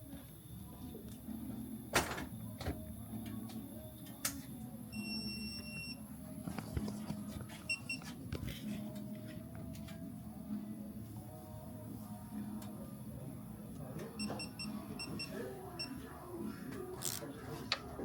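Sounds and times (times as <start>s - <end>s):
electronic beeps: 4.9s - 6.0s, 14.1s - 16.0s.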